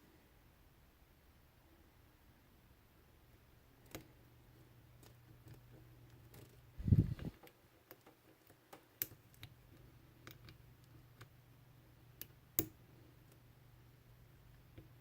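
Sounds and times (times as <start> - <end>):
faint low hum: 0.0 - 7.5.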